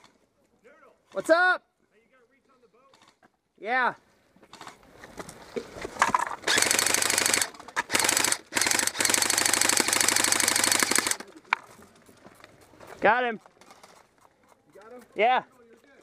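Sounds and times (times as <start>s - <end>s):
airsoft gun firing full auto: 6.4s - 11.2s.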